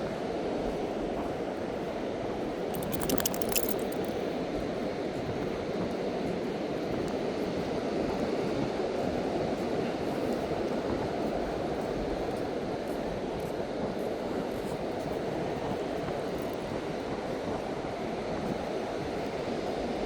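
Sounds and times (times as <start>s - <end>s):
wind: 0.0s - 20.0s
light clicks: 2.8s - 4.2s.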